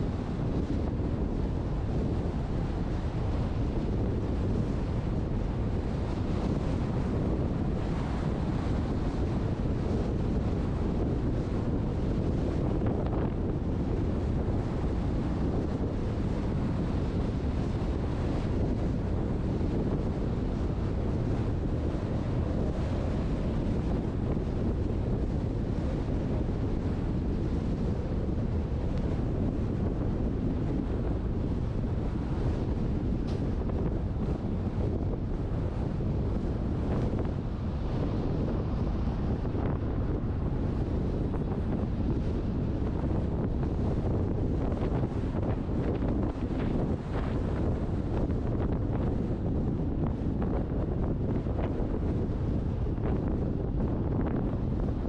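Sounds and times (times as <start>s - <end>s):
wind rushing over microphone: 0.0s - 55.0s.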